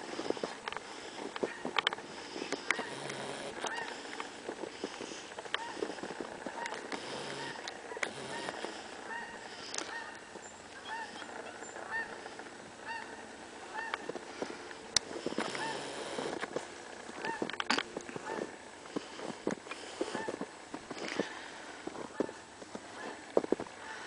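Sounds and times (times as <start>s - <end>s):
goose honking: 2.6s - 4.1s, 5.5s - 14.1s, 15.4s - 16.3s, 17.2s - 18.6s.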